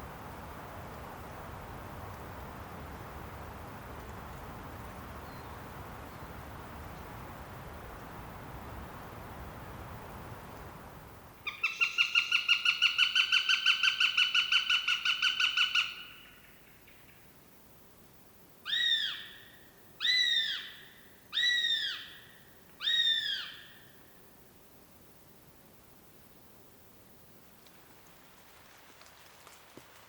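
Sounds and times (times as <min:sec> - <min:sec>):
arched bird calls: 0:11.4 - 0:17.2, 0:18.7 - 0:23.9
bird trilled call: 0:11.5 - 0:16.3, 0:22.8 - 0:23.8.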